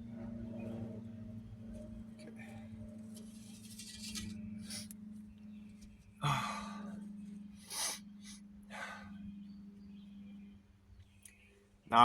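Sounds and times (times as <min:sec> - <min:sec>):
low hum: 0:00.0 - 0:12.0
person breathing hard: 0:06.2 - 0:07.0, 0:07.6 - 0:09.2.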